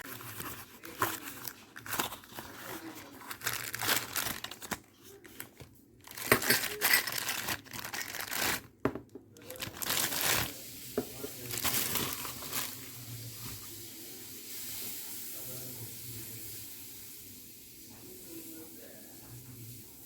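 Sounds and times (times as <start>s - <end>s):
packaging crinkling and tearing: 0.0s - 13.4s.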